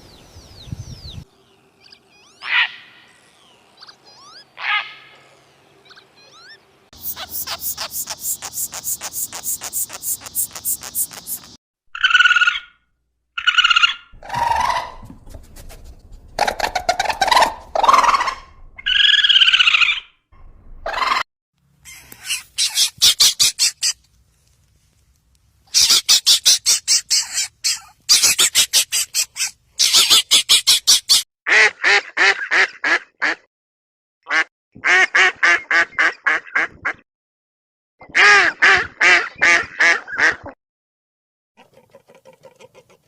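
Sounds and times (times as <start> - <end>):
ducks quacking: 7.0 - 11.5.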